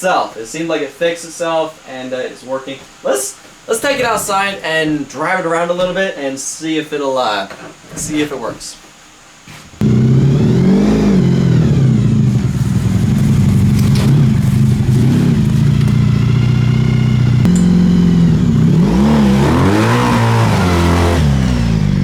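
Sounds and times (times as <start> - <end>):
motorcycle engine revving: 9.8 - 22.0.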